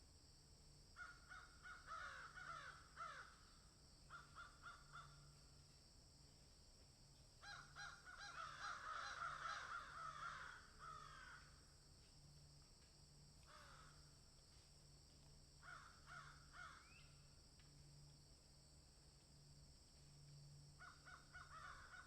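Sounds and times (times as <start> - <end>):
crows cawing: 1.0 - 3.5, 4.1 - 5.4, 7.4 - 11.7, 13.4 - 14.1, 15.6 - 17.0, 20.8 - 22.0.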